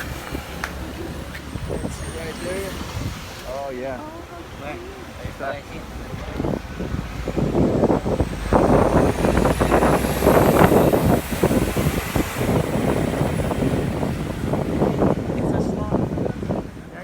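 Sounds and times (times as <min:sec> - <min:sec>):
wind buffeting microphone: 0:00.0 - 0:17.0
steady low rumble: 0:04.2 - 0:17.0.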